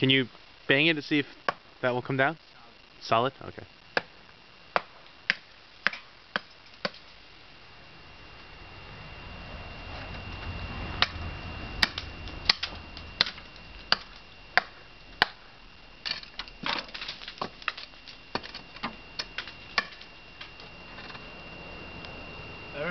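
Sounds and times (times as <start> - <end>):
knocks banging on icicles: 11.8 - 21.1.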